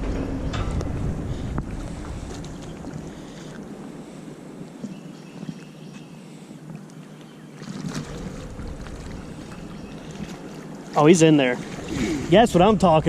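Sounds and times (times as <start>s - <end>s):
wind buffeting microphone: 0.0s - 5.8s, 7.8s - 11.0s
water splashing and sloshing: 0.0s - 13.0s.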